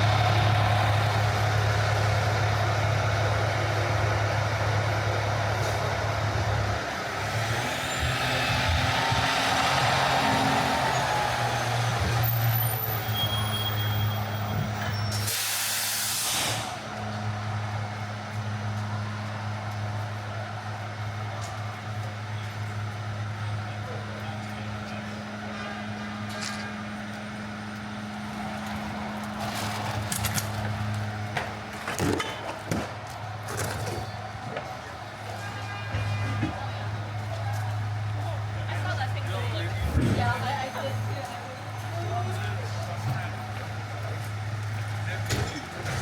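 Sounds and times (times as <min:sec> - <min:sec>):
heavy vehicle engine idling: 0:00.0 - 0:07.7, 0:09.3 - 0:46.0
air brakes hissing: 0:12.3 - 0:16.9.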